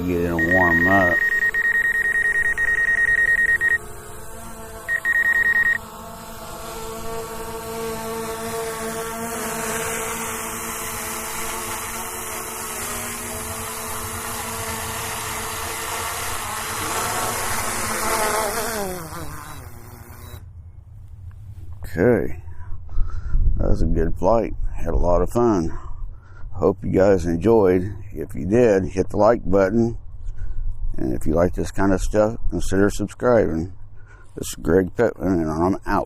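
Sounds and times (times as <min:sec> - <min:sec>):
drone propellers humming: 0:00.0 - 0:21.7
high beep: 0:00.3 - 0:03.8, 0:04.9 - 0:05.8.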